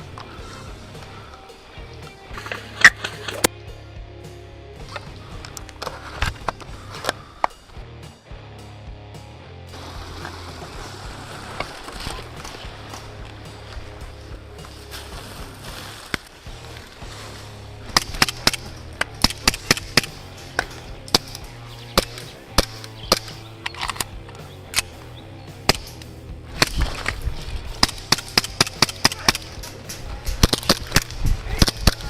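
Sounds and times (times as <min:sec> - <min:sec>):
background music with bass line: 0:00.0 - 0:32.0
airsoft pistol shots: 0:17.9 - 0:21.4, 0:27.8 - 0:29.6.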